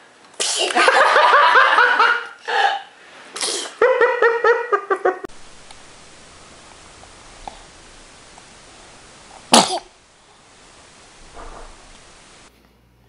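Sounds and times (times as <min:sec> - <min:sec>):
person laughing: 0:03.6 - 0:05.3.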